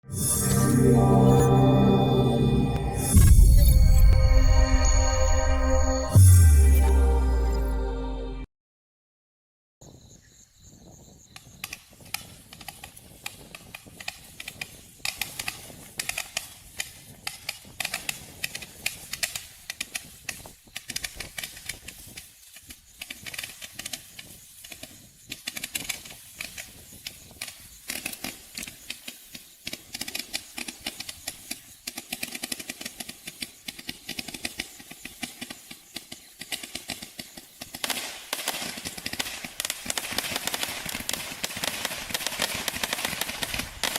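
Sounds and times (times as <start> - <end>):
firework cake cracks and pops: 11.6 - 43.9.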